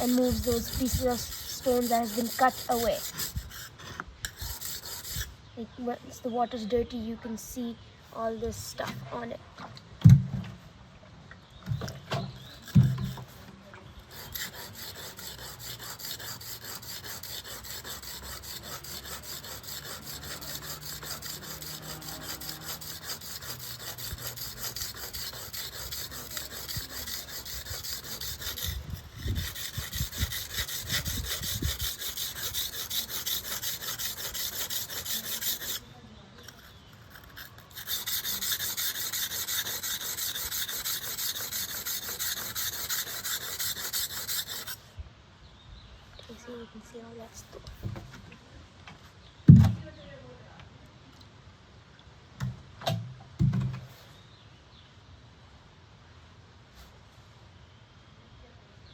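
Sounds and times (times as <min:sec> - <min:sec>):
blade scraping on whetstone: 0:00.0 - 0:05.3, 0:12.2 - 0:13.5, 0:14.1 - 0:44.8.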